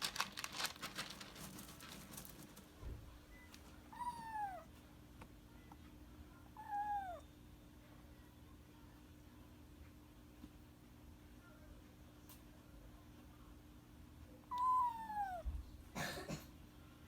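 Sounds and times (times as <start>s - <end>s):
kitten meowing: 3.9s - 4.7s, 6.6s - 7.2s, 14.5s - 15.5s.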